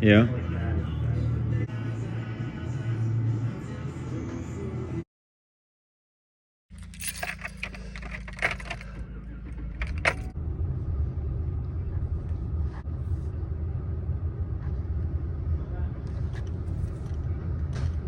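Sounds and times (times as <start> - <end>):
metallic clinking and jangling: 6.7 - 10.4
steady low rumble: 6.9 - 18.0.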